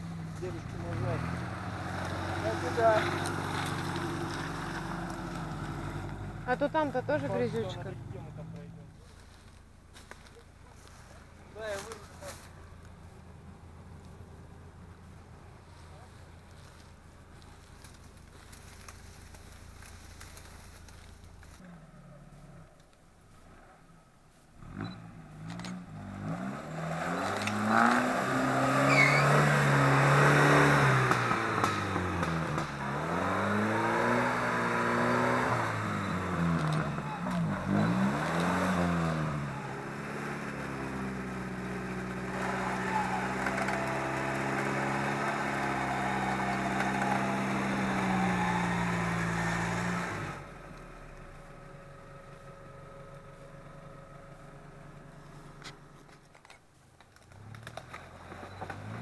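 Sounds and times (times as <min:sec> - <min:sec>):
engine revving hard: 0:00.4 - 0:08.4, 0:24.6 - 0:50.5.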